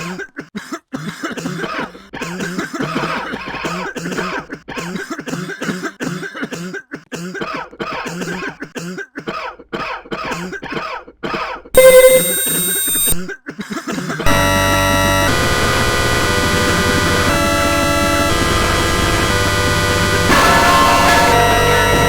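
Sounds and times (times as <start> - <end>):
person coughing: 0.0 - 11.0, 13.2 - 14.2.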